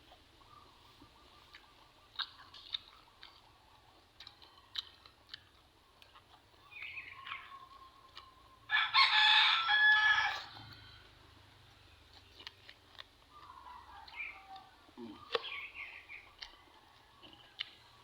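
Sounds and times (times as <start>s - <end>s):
rooster crowing: 8.7s - 11.1s.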